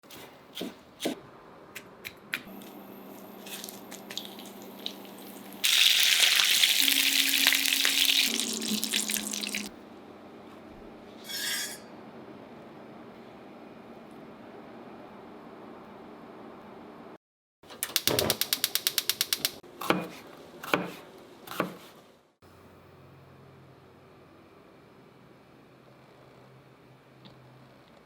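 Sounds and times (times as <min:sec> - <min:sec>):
tofu sizzling in oil: 0:03.0 - 0:09.7.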